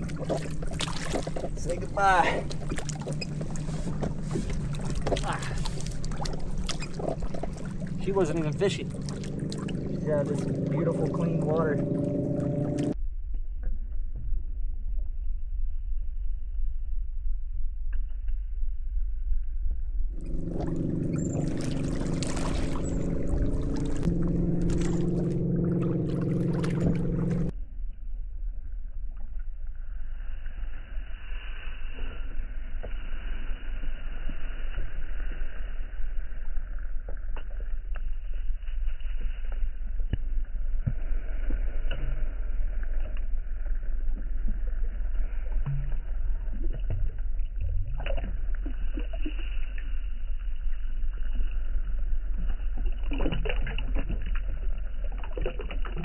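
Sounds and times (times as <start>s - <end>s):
water against hull: 0.0s - 13.0s, 20.1s - 56.0s
low rumble of kayak drive: 0.0s - 56.0s
humming tone: 9.0s - 15.7s, 19.8s - 36.5s.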